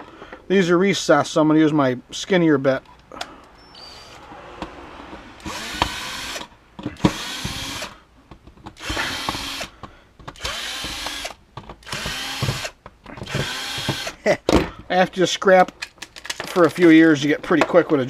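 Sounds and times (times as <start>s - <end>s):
power drill bursts: 5.4s - 8.0s, 8.8s - 9.7s, 10.4s - 14.2s
handling noises: 11.5s - 18.0s.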